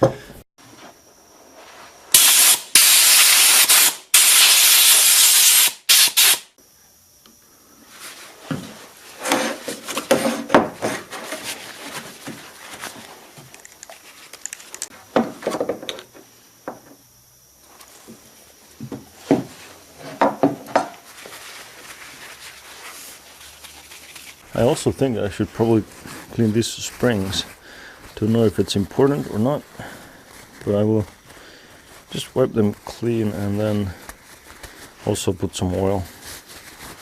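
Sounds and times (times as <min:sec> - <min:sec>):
compressed air hissing: 0:02.1 - 0:06.6, 0:26.1 - 0:28.2.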